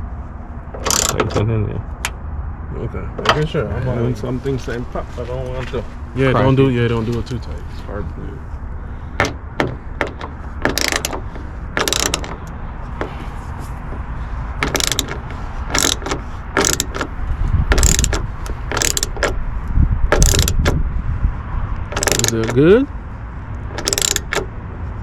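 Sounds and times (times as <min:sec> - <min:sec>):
hand ratchet clicking: 0:00.8 - 0:01.3, 0:10.0 - 0:13.2, 0:14.6 - 0:17.1, 0:17.7 - 0:19.4, 0:20.1 - 0:20.8, 0:21.9 - 0:22.6, 0:23.7 - 0:24.5.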